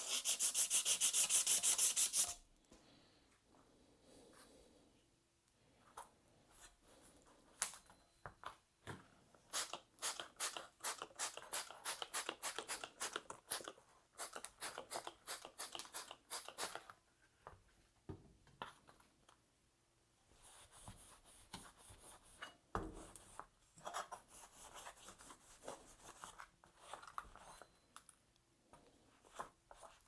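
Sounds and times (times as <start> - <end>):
sanding scratchy strokes on metal: 0.0 - 2.4.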